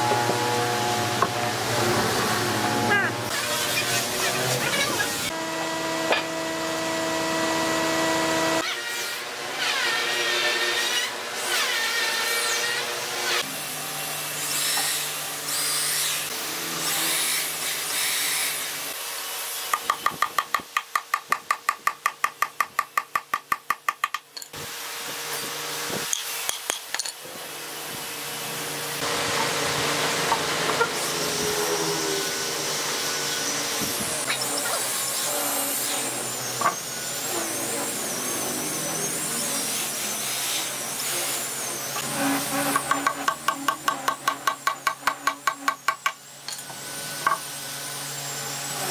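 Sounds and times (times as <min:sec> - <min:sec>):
power tools running on wood: 0:00.0 - 0:08.7, 0:28.4 - 0:48.9.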